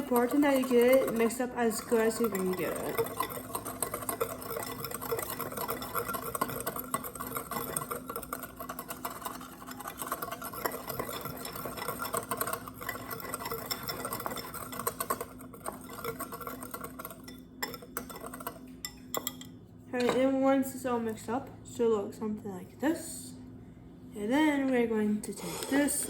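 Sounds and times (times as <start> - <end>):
whisk scratching against bowl: 0.0 - 19.4, 25.3 - 26.0.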